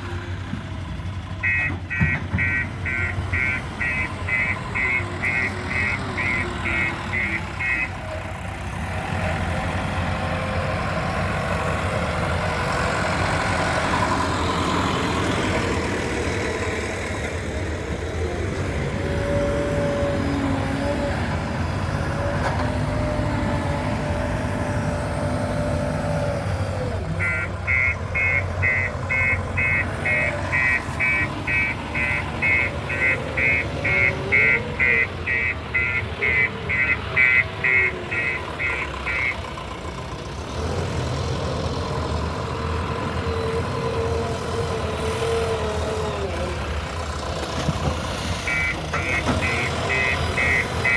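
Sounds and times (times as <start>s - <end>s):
diesel engine revving: 0.0s - 50.9s
reversing alarm beeping: 27.2s - 39.4s, 48.5s - 50.9s.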